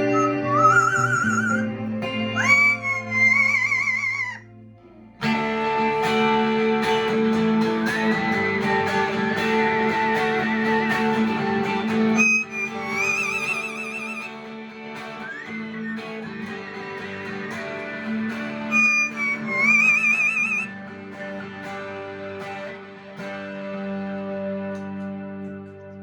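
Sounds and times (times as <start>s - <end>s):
parrot singing warbling notes: 0.0s - 4.5s, 12.2s - 14.3s, 18.7s - 20.7s
acoustic guitar strumming chords: 4.4s - 25.2s.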